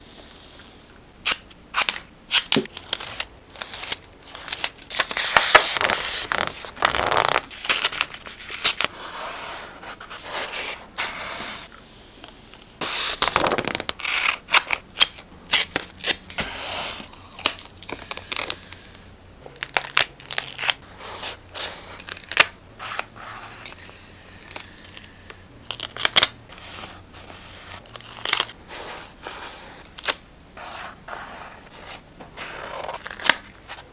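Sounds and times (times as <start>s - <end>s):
paper rustling and crinkling: 2.6s - 11.7s.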